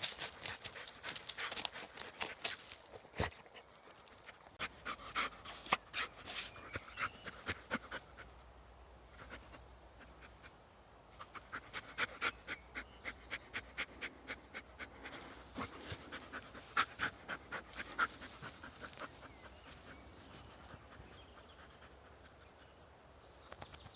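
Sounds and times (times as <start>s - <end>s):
puppy panting: 4.6s - 8.3s, 11.2s - 22.8s.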